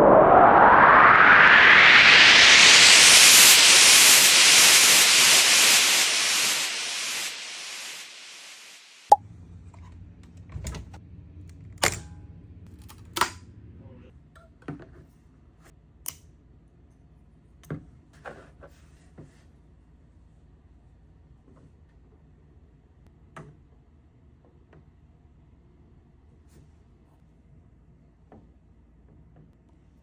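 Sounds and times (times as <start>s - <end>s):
hiss: 0.4s - 9.1s.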